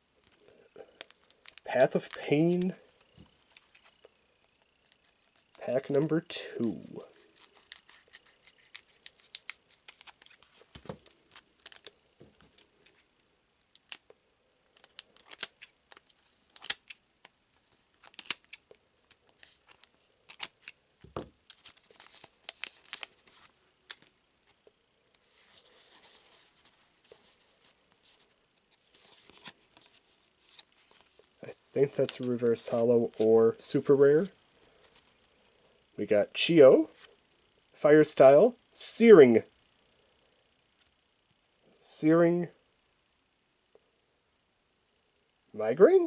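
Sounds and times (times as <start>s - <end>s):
foil pack crinkling: 0.3s - 5.9s, 7.0s - 13.1s, 14.7s - 24.6s.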